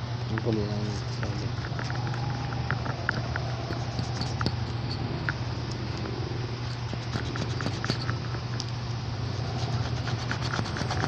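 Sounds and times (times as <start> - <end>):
steady low hum: 0.0 - 11.0
clicks and scratches on shoe sole: 6.8 - 8.4, 9.6 - 11.0.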